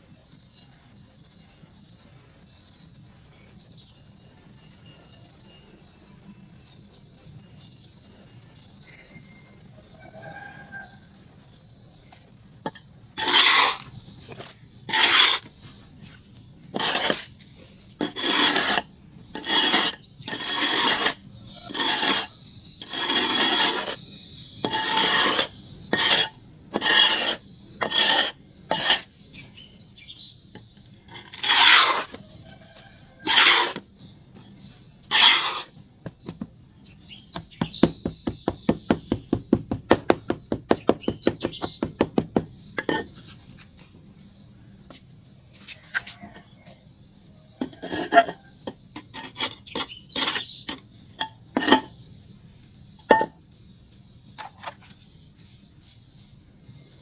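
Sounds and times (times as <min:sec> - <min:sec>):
charcoal scraping: 0:12.6 - 0:29.6, 0:30.6 - 0:43.9, 0:47.6 - 0:52.0.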